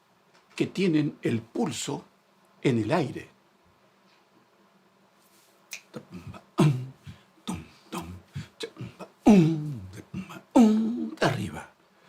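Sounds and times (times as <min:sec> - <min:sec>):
mouth clicks: 0:05.7 - 0:06.9
man voicing rhythmic syllables: 0:05.7 - 0:11.8.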